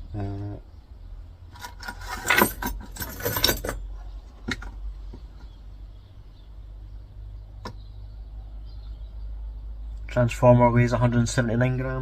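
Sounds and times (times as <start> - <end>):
metal scrap clinking: 1.6 - 3.9.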